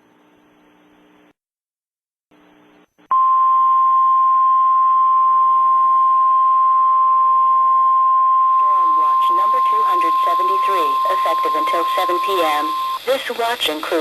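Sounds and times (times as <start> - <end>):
faint radio hiss: 0.0 - 1.3, 8.6 - 14.0
steady single-pitch alert tone: 3.1 - 13.0.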